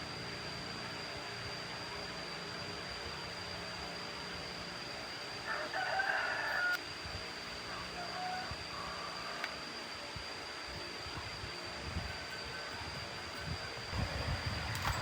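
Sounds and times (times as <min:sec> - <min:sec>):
background hum: 0:00.0 - 0:15.0
constant high whine: 0:00.0 - 0:15.0
rooster crowing: 0:05.4 - 0:06.8, 0:07.7 - 0:09.5.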